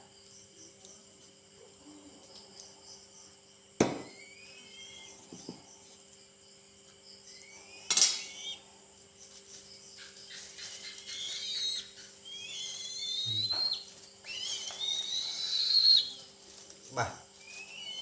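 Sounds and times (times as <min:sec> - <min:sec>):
young eagle whistled calls: 0:04.1 - 0:05.1, 0:07.3 - 0:08.6, 0:10.8 - 0:16.2, 0:17.4 - 0:18.0.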